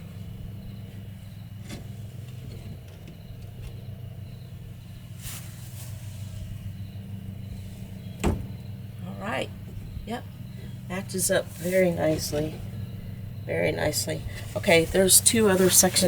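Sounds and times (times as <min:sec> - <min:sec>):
steady low hum: 0:00.0 - 0:16.0
faint knocks: 0:08.1 - 0:08.7.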